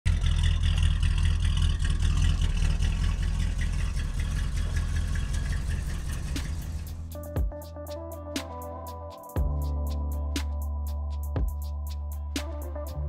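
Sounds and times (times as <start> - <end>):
car engine and road rumble: 0.0 - 7.2
car body rattling: 0.1 - 7.0.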